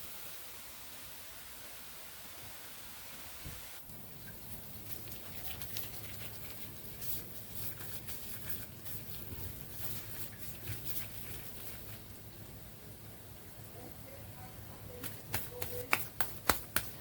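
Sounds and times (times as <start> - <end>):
oil crackling and popping: 3.8 - 12.6.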